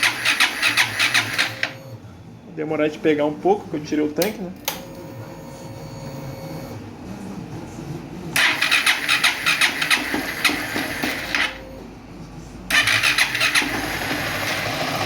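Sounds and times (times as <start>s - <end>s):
motorcycle engine cranking: 0.0s - 1.8s, 8.4s - 11.6s, 12.7s - 15.0s.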